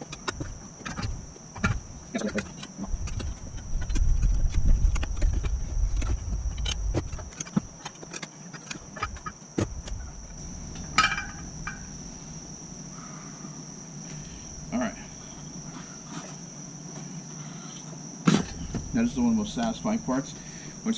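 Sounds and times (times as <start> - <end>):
tire irons clicking and knocking: 0.0 - 11.9
crickets chirring: 0.0 - 20.9.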